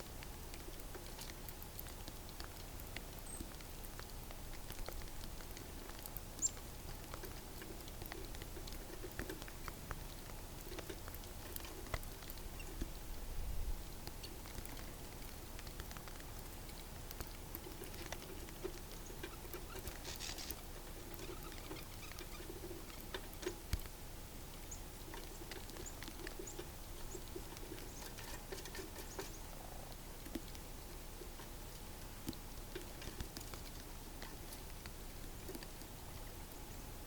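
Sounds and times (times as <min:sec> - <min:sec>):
small animals tapping at feeder: 0:00.2 - 0:13.2, 0:13.9 - 0:36.3.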